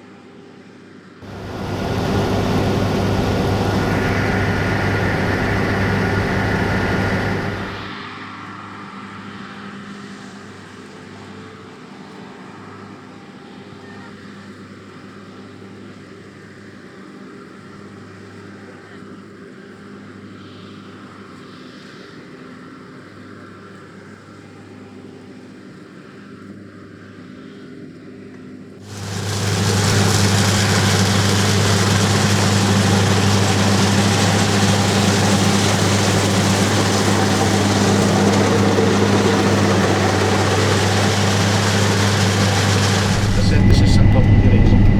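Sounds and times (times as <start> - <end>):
combine harvester engine hum: 1.2 - 8.0, 28.8 - 44.9.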